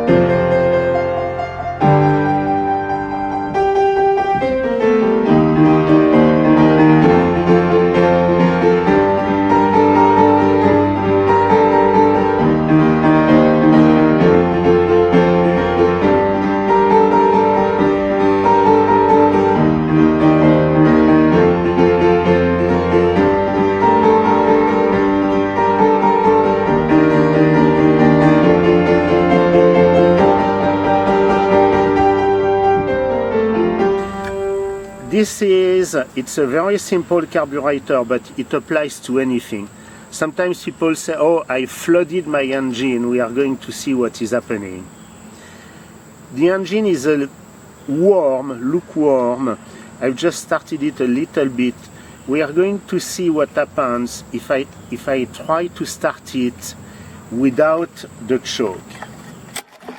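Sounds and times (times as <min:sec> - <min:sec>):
piano music: 0:00.0 - 0:45.3.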